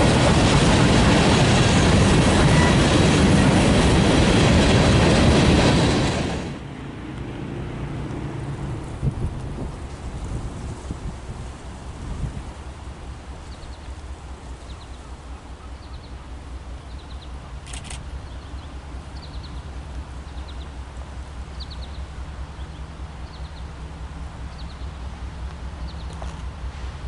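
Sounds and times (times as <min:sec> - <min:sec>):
bird chirping: 0:14.6 - 0:17.4, 0:18.2 - 0:19.7, 0:21.5 - 0:23.7.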